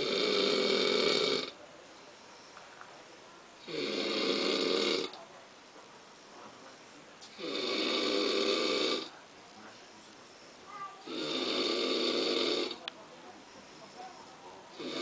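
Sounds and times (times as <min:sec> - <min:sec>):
slow regular snoring: 0:00.0 - 0:01.6, 0:03.6 - 0:05.2, 0:07.3 - 0:09.2, 0:10.5 - 0:12.9, 0:14.7 - 0:15.0.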